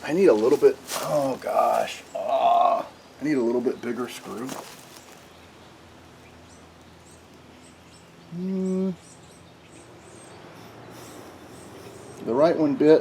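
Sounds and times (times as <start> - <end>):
faint high bird chirps: 6.2 - 12.2.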